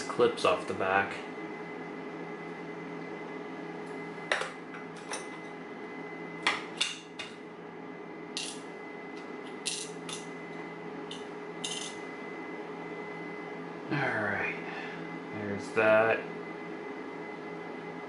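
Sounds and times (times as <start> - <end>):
metal tools clinking on bench: 8.4 - 8.6, 9.7 - 10.3, 11.1 - 12.0.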